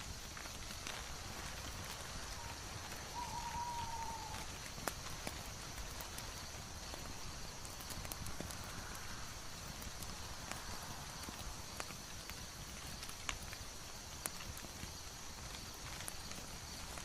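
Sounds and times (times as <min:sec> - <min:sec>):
sharp ticks and crackles: 0:00.0 - 0:17.0
steady hiss: 0:00.0 - 0:17.0
falling whistle-like tone: 0:02.4 - 0:04.5.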